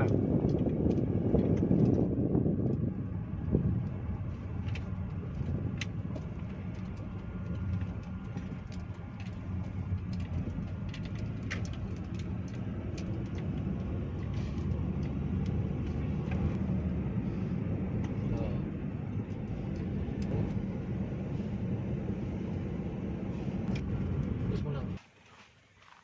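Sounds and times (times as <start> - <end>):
car engine and tyres rumbling: 0.0 - 26.0
man speaking: 24.5 - 25.0.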